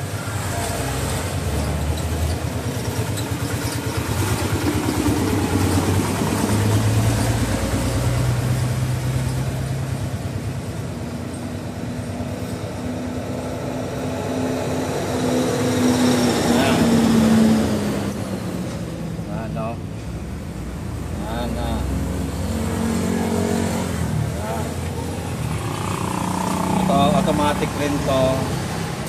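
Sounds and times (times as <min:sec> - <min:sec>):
vehicle engine running: 0:00.0 - 0:14.4, 0:20.2 - 0:29.0.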